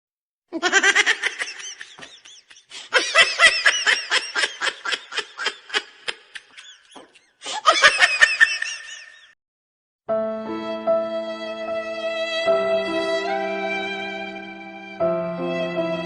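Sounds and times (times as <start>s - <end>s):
high-pitched rapid laughing: 0.6s - 9.3s
music: 10.1s - 16.0s.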